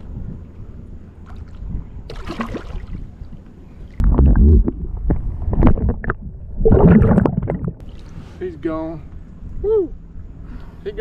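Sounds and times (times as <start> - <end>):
underwater river water sloshing: 1.2 - 8.4
underwater knocks and clicks: 4.0 - 7.8.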